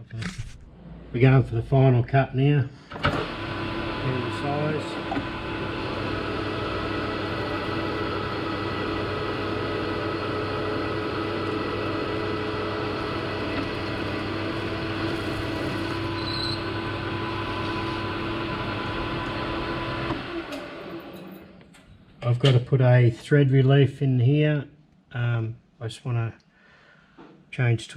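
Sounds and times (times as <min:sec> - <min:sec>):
metal lathe humming and whining: 0:03.0 - 0:21.5.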